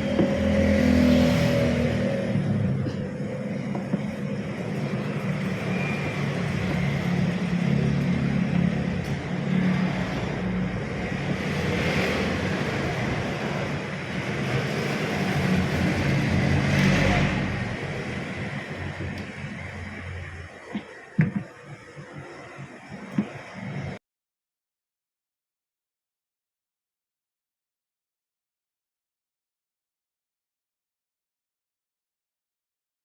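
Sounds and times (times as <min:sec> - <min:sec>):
washing machine motor humming: 0:00.0 - 0:24.0.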